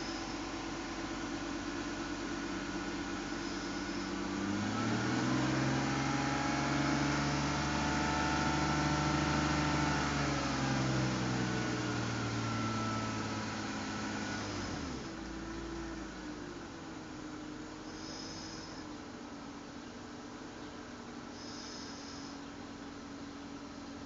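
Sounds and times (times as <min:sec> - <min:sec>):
car engine idling and revving: 0:00.0 - 0:24.0.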